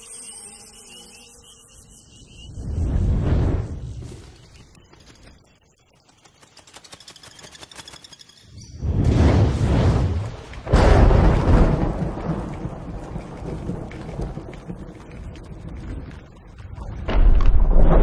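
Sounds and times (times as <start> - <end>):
loud thunderclap: 9.0 - 15.6
deep rumble of thunder: 9.0 - 16.3
rain: 9.4 - 17.6.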